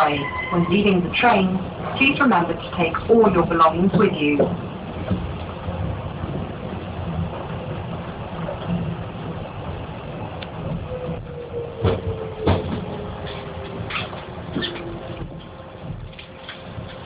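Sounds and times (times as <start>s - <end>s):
train rumble from inside carriage: 0.0s - 17.0s.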